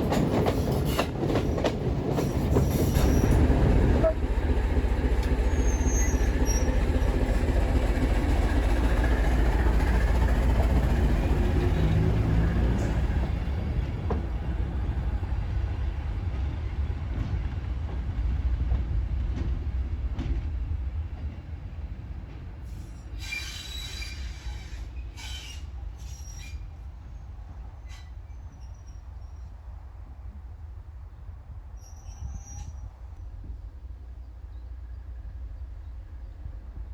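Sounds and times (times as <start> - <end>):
train wheel squeals: 0.0 - 14.2, 22.7 - 29.6, 31.8 - 33.2
train rumbling past: 0.0 - 36.9.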